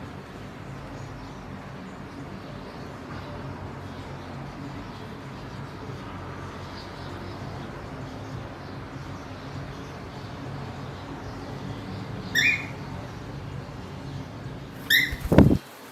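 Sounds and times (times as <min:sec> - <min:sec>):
cockatiel chirp: 0:12.3 - 0:12.8, 0:14.8 - 0:15.6.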